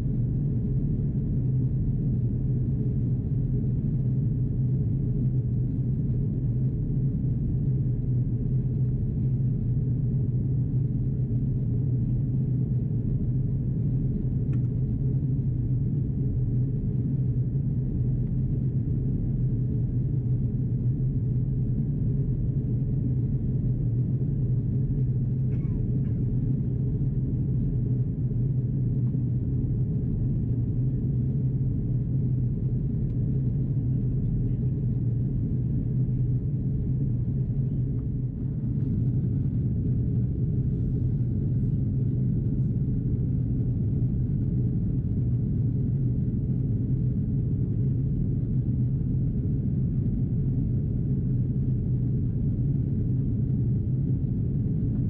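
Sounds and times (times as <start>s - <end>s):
airflow over aircraft cabin: 0.0s - 55.0s
jet engines low hum: 0.0s - 55.0s.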